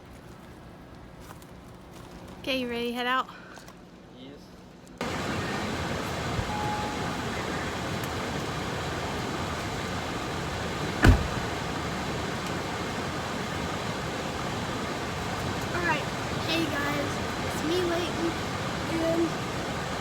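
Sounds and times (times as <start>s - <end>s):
road and engine noise in cabin: 4.6s - 20.0s
sharp thump: 11.0s - 11.4s.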